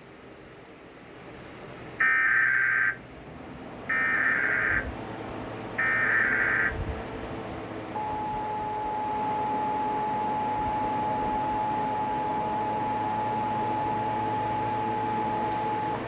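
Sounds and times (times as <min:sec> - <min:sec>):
steady attention tone: 0:03.9 - 0:16.0.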